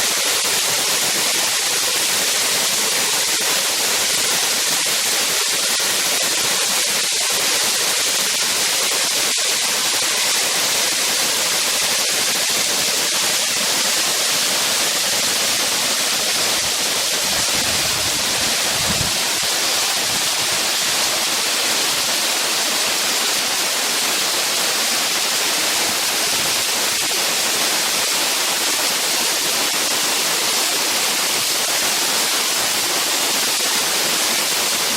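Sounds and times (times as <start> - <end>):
waterfall crashing: 0.0 - 34.9.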